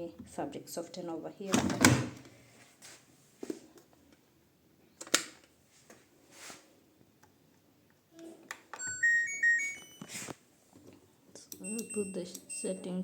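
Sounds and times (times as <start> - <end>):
electronic beep melody: 8.8 - 10.1, 11.6 - 13.0.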